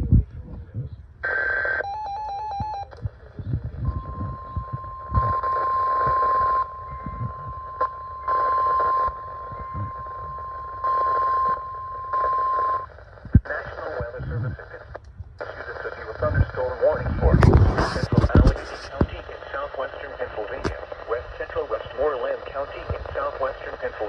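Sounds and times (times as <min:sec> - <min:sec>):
steady high alarm tone: 0:03.8 - 0:12.9
stepped electronic beeping: 0:03.8 - 0:12.9.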